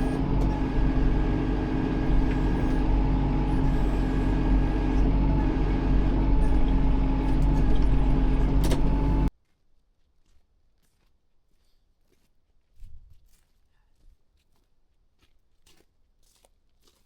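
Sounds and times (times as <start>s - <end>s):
tractor engine running: 0.0s - 9.3s.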